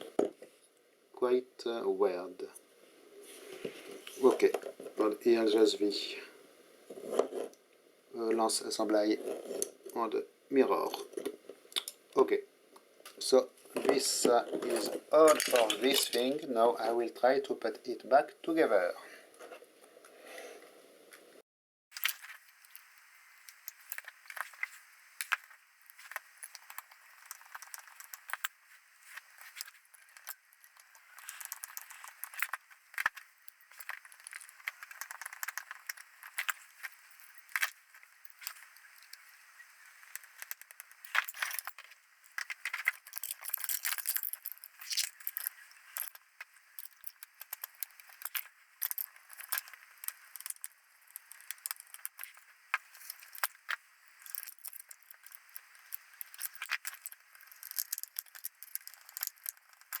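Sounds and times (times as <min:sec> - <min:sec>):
small parts and tools clicking: 0:13.8 - 0:16.4, 0:21.9 - 1:00.0.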